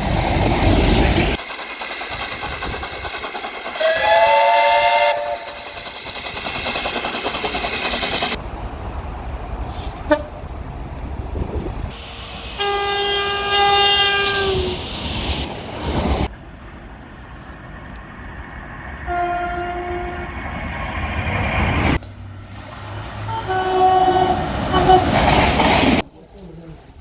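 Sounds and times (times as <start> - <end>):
trains running: 0.0 - 27.0
train horn blasts: 3.8 - 5.6, 10.0 - 10.4, 12.6 - 14.8, 19.0 - 20.3, 23.2 - 25.2.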